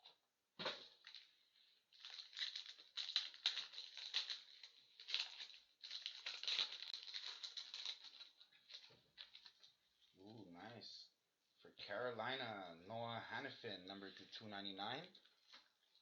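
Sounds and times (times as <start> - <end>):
wrapper torn and crinkled: 1.0 - 1.3, 1.9 - 9.7.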